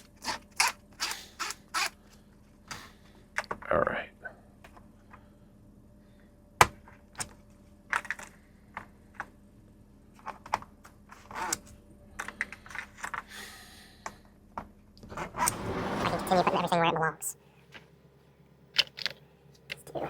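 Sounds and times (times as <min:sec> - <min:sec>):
scraping rustle: 0:15.1 - 0:16.6.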